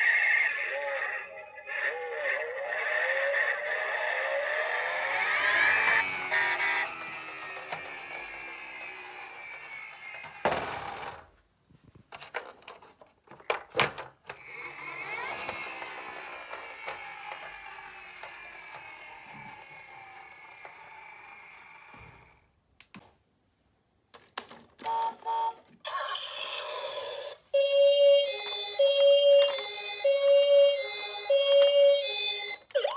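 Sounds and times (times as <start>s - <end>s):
toy car wheels whirring: 0.0s - 11.2s, 14.4s - 22.5s, 26.0s - 32.9s.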